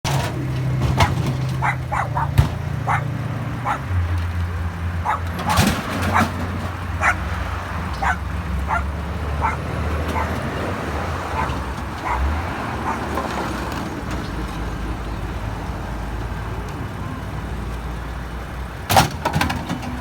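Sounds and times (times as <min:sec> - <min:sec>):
vehicle engine drone: 0:00.1 - 0:20.0
dog barking in sharp yips: 0:01.0 - 0:03.9, 0:05.0 - 0:06.4, 0:07.0 - 0:07.3, 0:08.0 - 0:10.4, 0:11.3 - 0:13.1.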